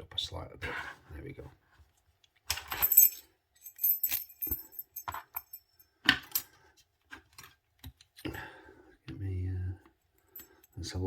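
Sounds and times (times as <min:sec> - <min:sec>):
keys and lock parts jingling: 0:02.5 - 0:06.6.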